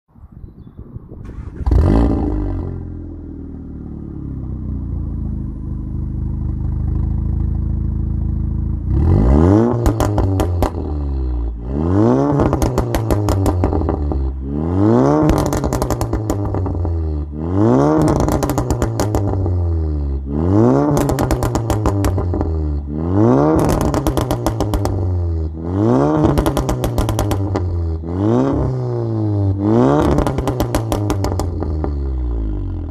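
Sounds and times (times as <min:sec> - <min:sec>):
car engine idling and revving: 0:01.3 - 0:32.9
exhaust pops and crackles: 0:09.7 - 0:10.9, 0:12.2 - 0:14.2, 0:15.1 - 0:17.1, 0:17.7 - 0:19.7, 0:20.6 - 0:22.6, 0:23.4 - 0:28.0, 0:29.8 - 0:32.2.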